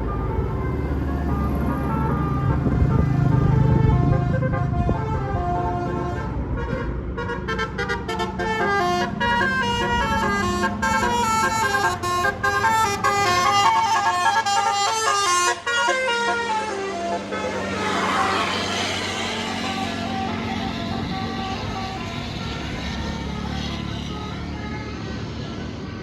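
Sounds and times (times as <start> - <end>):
bus engine rumbling: 0.0 - 26.0
horn playing a melody: 1.8 - 22.4.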